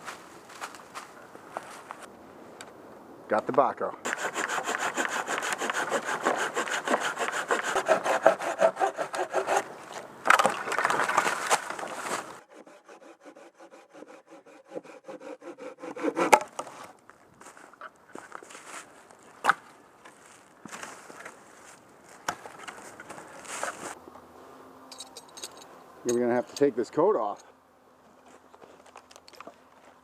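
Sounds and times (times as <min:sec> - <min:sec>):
hand saw cutting wood: 0:04.0 - 0:10.0, 0:11.8 - 0:16.6.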